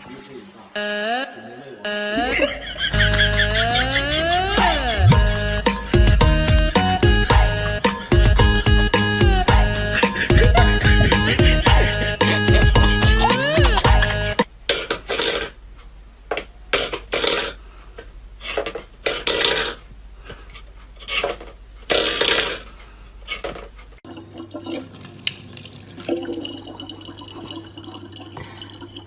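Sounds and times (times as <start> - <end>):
low hum: 2.1 - 14.4
running water: 24.0 - 29.0.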